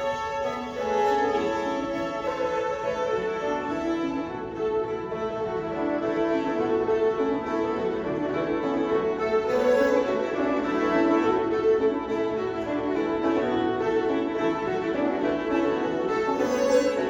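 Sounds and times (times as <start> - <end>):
fiddles playing: 0.0 - 17.0
banjo playing: 6.1 - 17.0.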